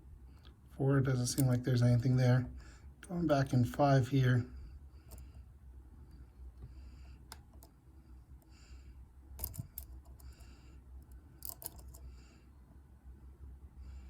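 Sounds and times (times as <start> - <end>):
faint metallic scraping of lock pick: 5.0 - 5.3, 9.3 - 12.1
lock pins clicking: 9.4 - 10.4, 11.0 - 12.0.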